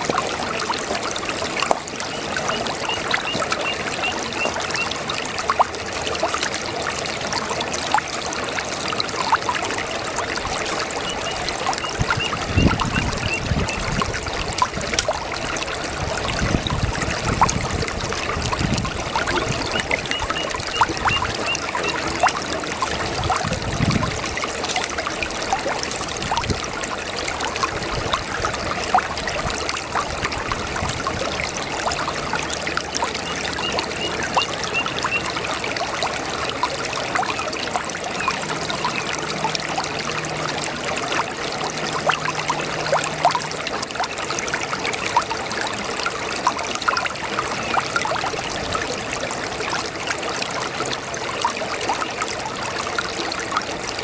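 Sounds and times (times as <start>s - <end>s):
brook babbling: 0.0s - 54.0s.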